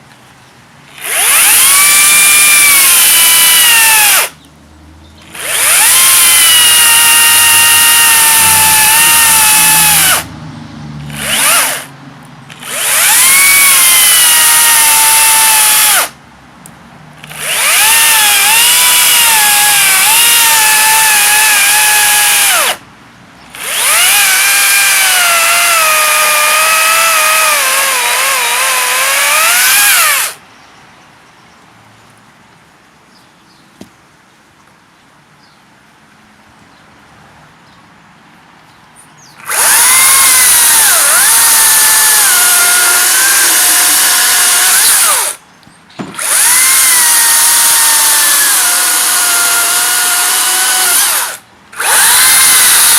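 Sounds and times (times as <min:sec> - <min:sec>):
electric chainsaw motor whining: 0:00.9 - 0:04.4, 0:05.3 - 0:10.3, 0:11.1 - 0:11.9, 0:12.5 - 0:16.2, 0:17.2 - 0:22.8, 0:23.5 - 0:30.4, 0:39.4 - 0:45.4, 0:46.1 - 0:52.9.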